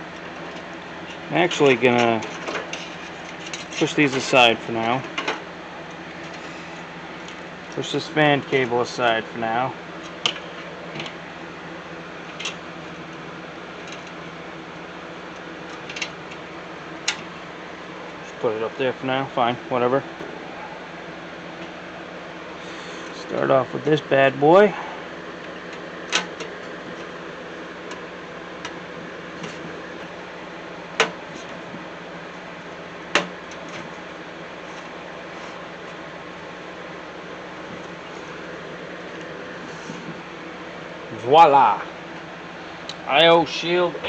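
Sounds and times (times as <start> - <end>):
steady background hum: 0.0 - 44.0.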